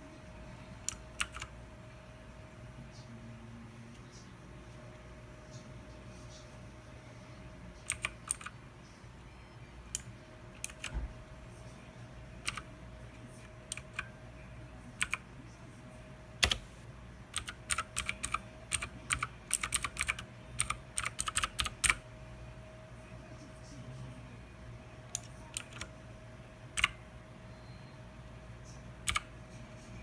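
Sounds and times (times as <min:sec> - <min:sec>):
mechanical keyboard keystrokes: 0:00.8 - 0:01.5, 0:07.8 - 0:08.5, 0:09.9 - 0:11.0, 0:12.4 - 0:12.7, 0:13.7 - 0:14.1, 0:15.0 - 0:15.2, 0:16.4 - 0:22.0, 0:25.1 - 0:25.9, 0:26.8 - 0:27.0, 0:29.0 - 0:29.3.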